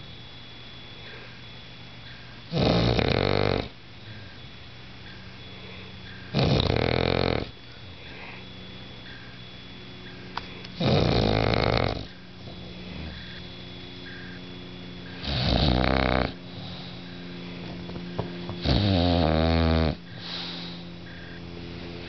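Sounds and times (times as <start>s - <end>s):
dog snoring: 2.5s - 4.4s, 5.6s - 8.4s, 10.8s - 14.4s, 15.1s - 21.4s.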